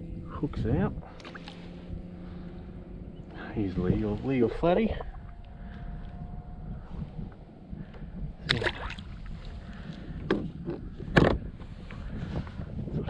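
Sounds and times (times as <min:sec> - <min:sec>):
low rumble: 0:00.0 - 0:13.0
knocks on a kayak: 0:11.1 - 0:11.4.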